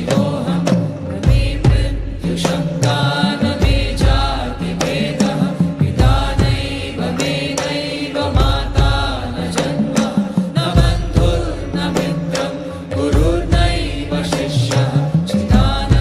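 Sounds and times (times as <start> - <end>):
devotional chant singing: 0.0 - 16.0.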